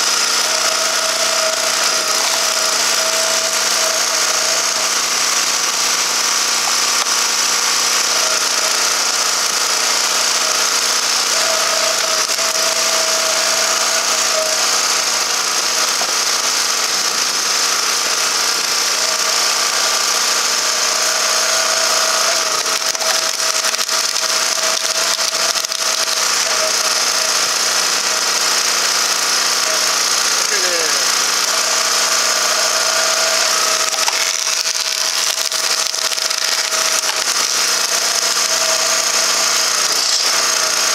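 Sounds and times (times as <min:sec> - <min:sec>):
log splitter motor: 0:00.0 - 0:40.9
machine whine: 0:00.0 - 0:40.9
sharp crackling: 0:21.9 - 0:26.6, 0:33.2 - 0:40.8.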